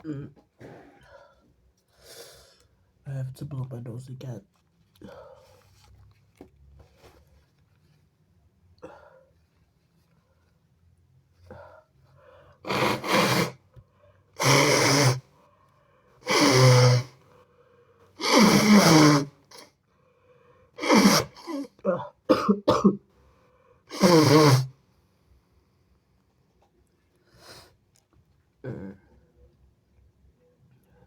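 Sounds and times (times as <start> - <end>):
man blowing nose: 12.6 - 13.7, 14.4 - 15.3, 16.2 - 17.2, 18.2 - 19.7, 20.8 - 21.8, 23.9 - 24.8.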